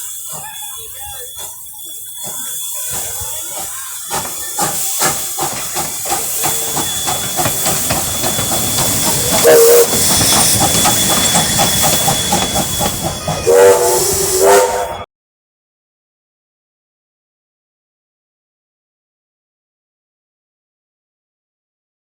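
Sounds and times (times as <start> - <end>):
steam locomotive chugging: 0.0 - 15.1
steam whistle toots: 6.2 - 15.1.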